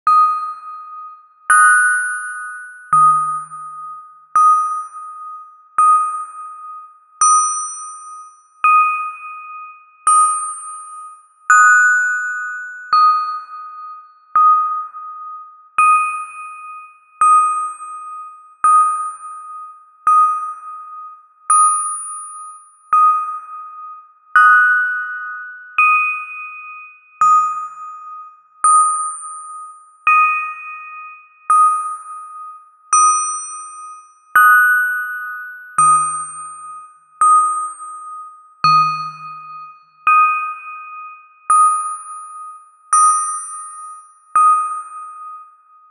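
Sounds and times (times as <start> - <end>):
bell struck: 2.9 - 3.8, 38.6 - 40.4.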